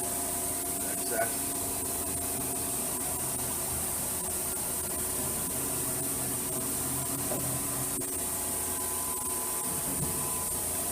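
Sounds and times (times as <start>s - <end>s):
machining center hiss and hum: 0.0s - 10.9s.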